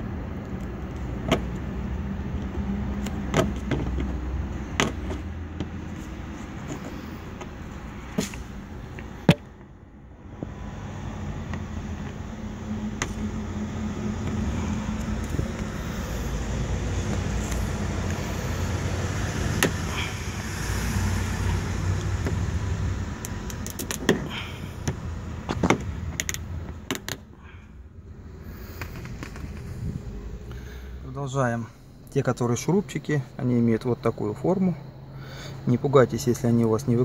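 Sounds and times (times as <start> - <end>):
motor vehicle rumble: 0.0 - 37.0
sharp clicks and knocks: 23.2 - 27.2.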